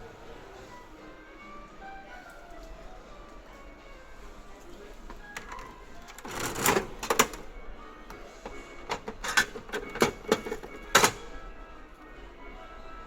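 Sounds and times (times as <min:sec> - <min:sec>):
background music: 0:00.0 - 0:13.0
vending machine clicks and knocks: 0:05.1 - 0:07.5, 0:08.4 - 0:11.3.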